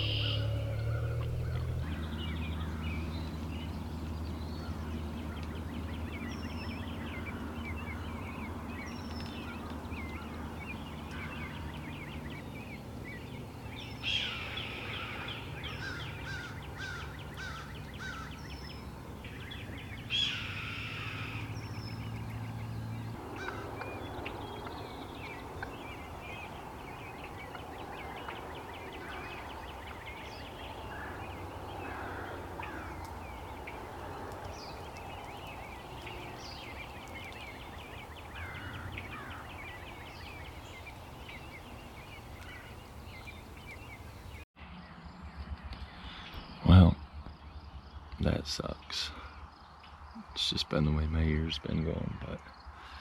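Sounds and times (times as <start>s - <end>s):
low steady hum: 0.0s - 6.7s
songbirds chirping: 0.0s - 53.0s.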